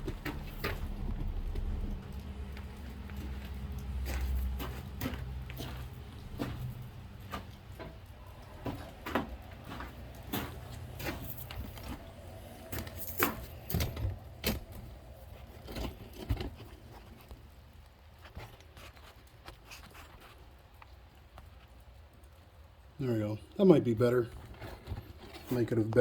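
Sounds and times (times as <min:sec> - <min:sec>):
low hum: 0:00.0 - 0:17.3.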